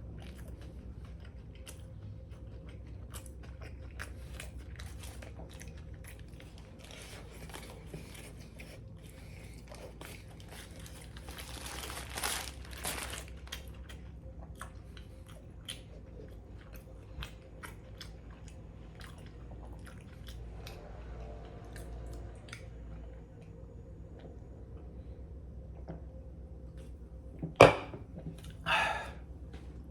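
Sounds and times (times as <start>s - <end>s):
person chewing crunchy sandwich: 0.0s - 23.5s.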